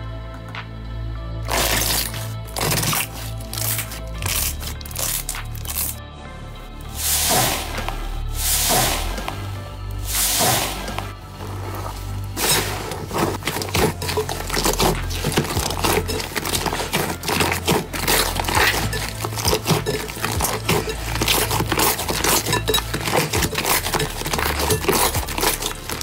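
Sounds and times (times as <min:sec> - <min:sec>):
quiet background music: 0:00.0 - 0:26.0
slime crackling and popping: 0:01.5 - 0:06.0, 0:11.8 - 0:26.0.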